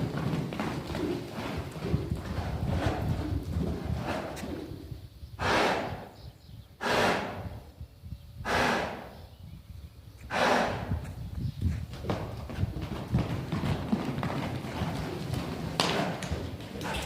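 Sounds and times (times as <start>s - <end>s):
horse blowing hard: 1.0s - 6.2s, 6.8s - 7.7s, 8.4s - 9.2s, 10.3s - 11.1s.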